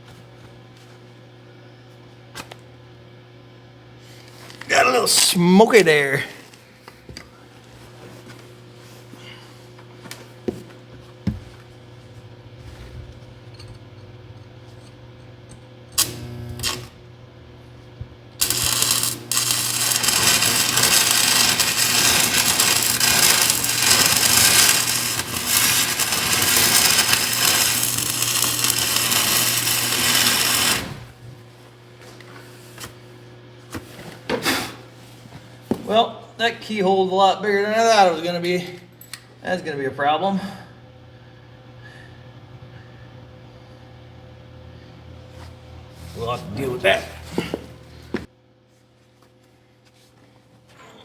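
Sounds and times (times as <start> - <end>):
steady low hum: 0.9 - 34.2
welding arc crackling: 14.5 - 31.2
welding arc strike: 16.0 - 17.2, 18.4 - 31.2.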